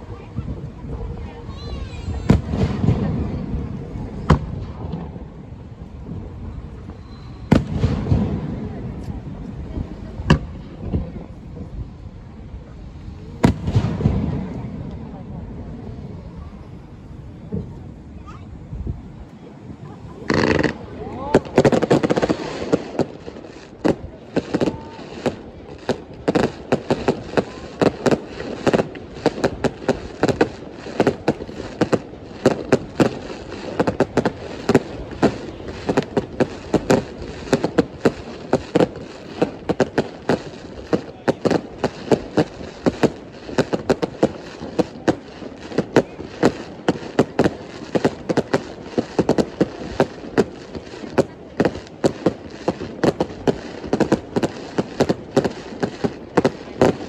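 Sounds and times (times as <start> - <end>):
fireworks bangs and crackles: 0.0 - 57.0.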